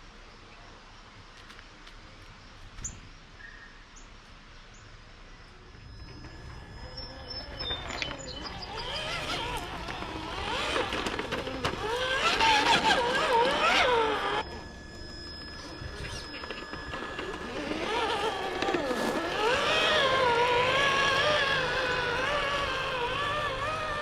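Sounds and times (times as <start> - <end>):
small electric motor whining: 5.4 - 24.0.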